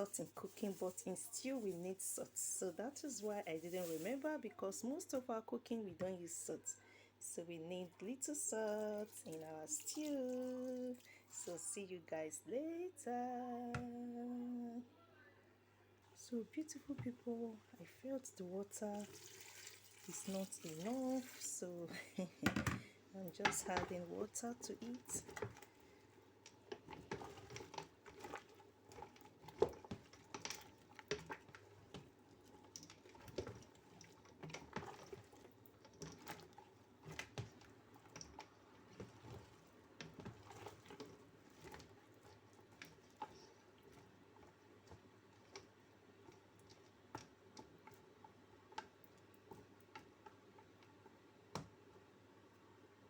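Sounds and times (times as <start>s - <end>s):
low steady hum: 0.0s - 29.7s
small clicks and pops of cooking pot: 22.4s - 52.0s.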